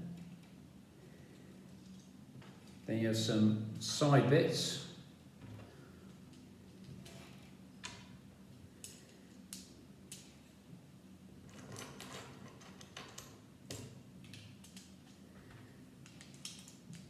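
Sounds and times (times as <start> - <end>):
low steady hum: 0.0 - 11.4.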